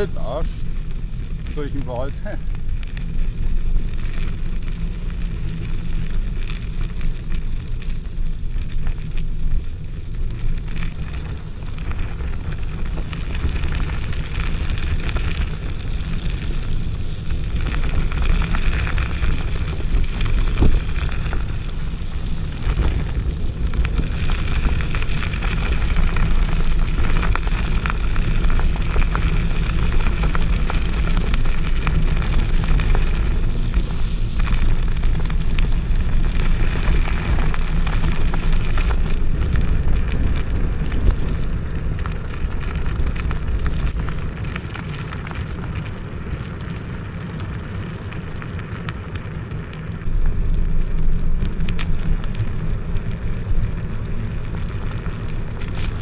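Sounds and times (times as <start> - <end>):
scooter tyres on wet track: 0.0 - 56.0
wind buffeting microphone: 9.4 - 46.3.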